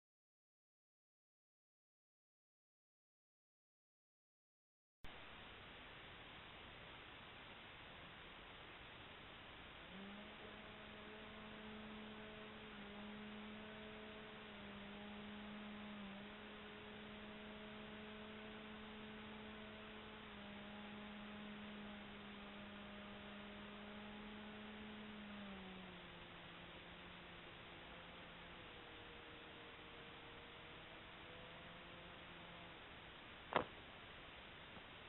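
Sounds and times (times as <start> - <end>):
background hiss: 5.1 - 35.0
model plane electric motor whine: 9.5 - 33.7.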